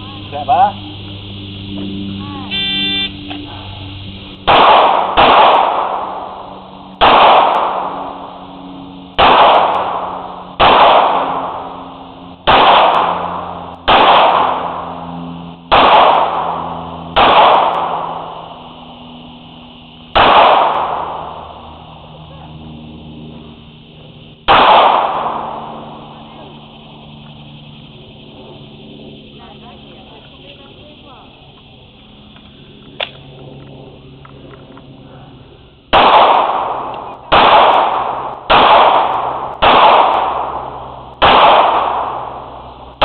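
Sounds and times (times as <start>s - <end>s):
pistol shots echoing: 4.4s - 18.6s, 20.0s - 21.8s, 24.4s - 26.6s, 35.9s - 43.0s.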